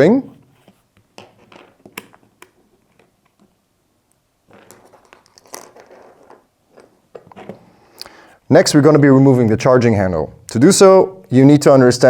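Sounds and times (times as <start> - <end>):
soft scraping and rustling: 0.2 - 1.8.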